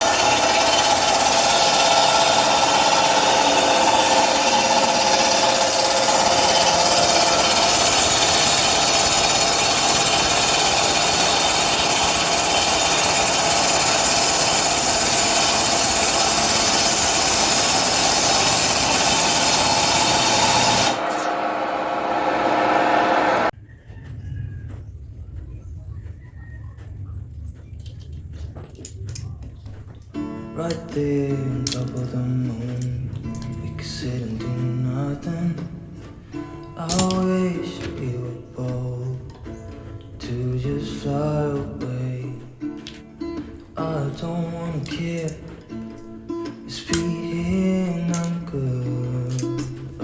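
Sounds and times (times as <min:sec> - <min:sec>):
power tool running: 0:00.0 - 0:23.5.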